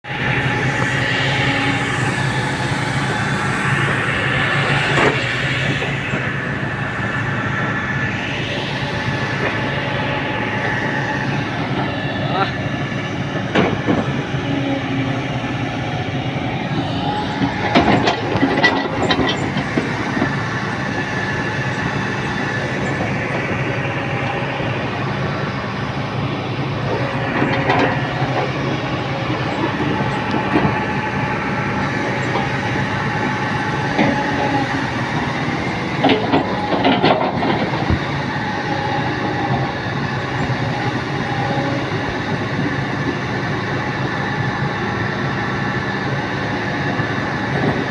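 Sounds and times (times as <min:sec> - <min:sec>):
diesel engine under load: 0:00.0 - 0:47.9
machine knocking and clanking: 0:13.4 - 0:14.4, 0:17.3 - 0:20.4, 0:26.8 - 0:31.1, 0:32.2 - 0:38.3.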